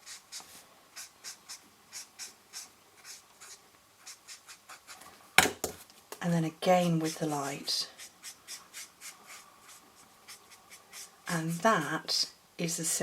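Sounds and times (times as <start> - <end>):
marker scratching on cardstock: 0.0 - 5.0, 8.0 - 11.1.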